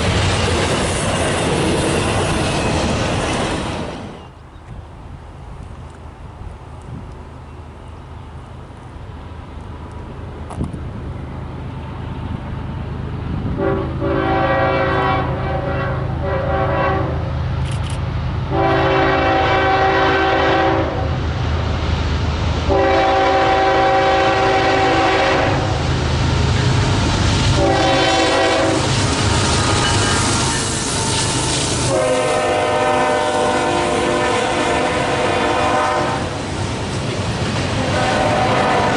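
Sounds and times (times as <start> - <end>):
diesel locomotive approaching: 0.0 - 38.9
multi-note air horn blasts: 13.6 - 17.2, 18.5 - 21.1, 22.7 - 25.7, 27.6 - 28.8, 31.9 - 36.3, 37.9 - 38.9.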